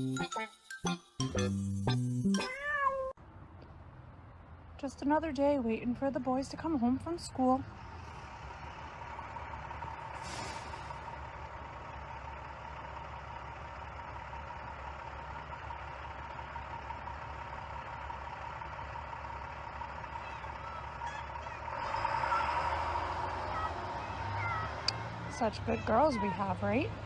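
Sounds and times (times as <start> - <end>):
large vehicle engine running: 3.2 - 27.0
brief hiss: 10.2 - 11.0.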